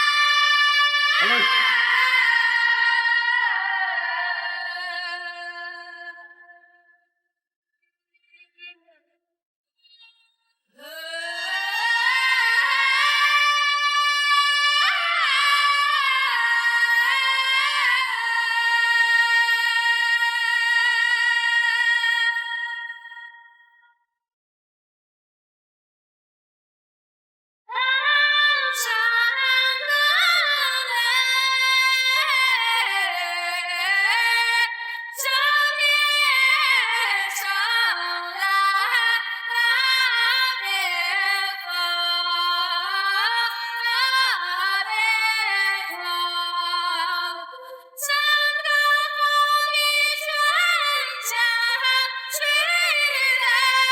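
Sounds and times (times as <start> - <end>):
person singing unaccompanied: 0.0 - 6.5, 27.7 - 53.9.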